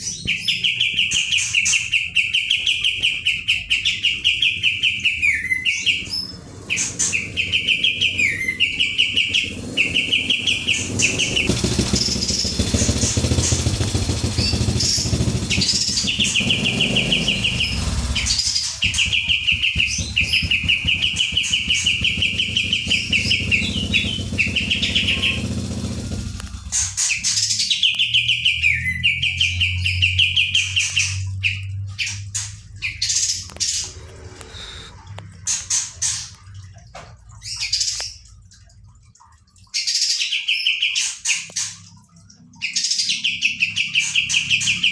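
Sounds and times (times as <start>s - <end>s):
songbird singing: 0.0s - 39.1s
low rumble: 6.0s - 27.2s, 31.2s - 37.4s.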